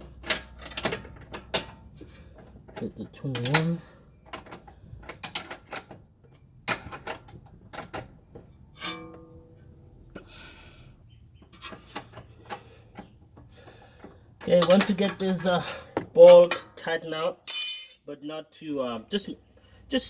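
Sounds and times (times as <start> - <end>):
short metallic ring: 17.5 - 18.1.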